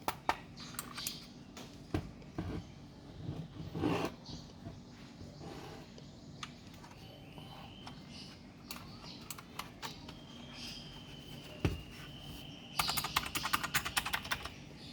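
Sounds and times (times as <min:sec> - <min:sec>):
mechanical keyboard typing: 0:12.8 - 0:14.6.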